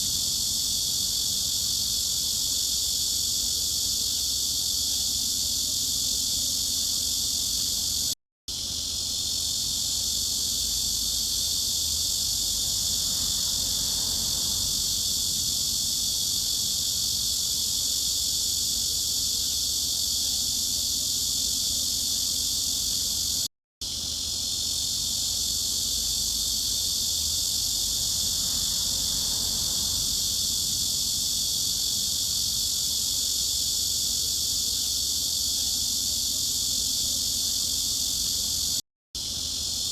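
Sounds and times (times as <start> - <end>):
cicada chorus drone: 0.0 - 39.9.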